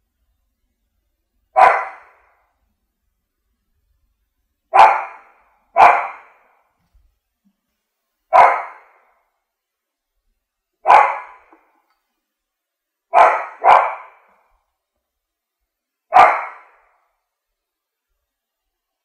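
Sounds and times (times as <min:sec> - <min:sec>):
dog barking: 0:01.5 - 0:02.4, 0:04.7 - 0:06.6, 0:08.3 - 0:09.2, 0:10.8 - 0:11.6, 0:13.1 - 0:14.5, 0:16.1 - 0:17.2.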